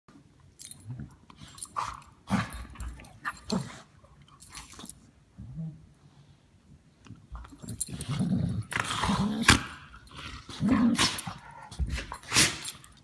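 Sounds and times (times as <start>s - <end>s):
dogs growling while play-fighting: 7.6s - 12.9s.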